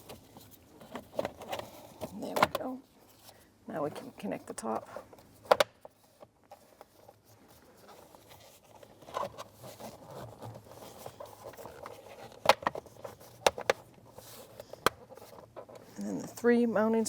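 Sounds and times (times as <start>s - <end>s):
plastic scraping and rustling: 0.0s - 16.4s.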